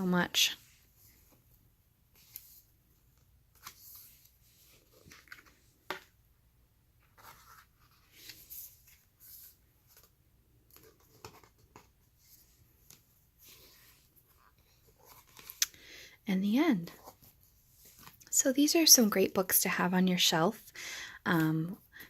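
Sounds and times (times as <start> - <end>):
book pages rustling: 2.1 - 6.2, 7.0 - 15.7, 16.8 - 18.3.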